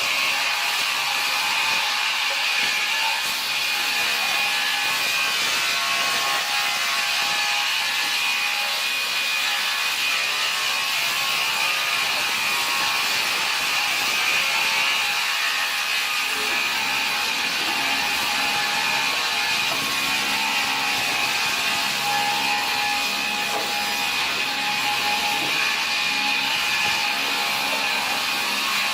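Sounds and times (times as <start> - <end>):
saw cutting through wood: 0.0 - 28.9.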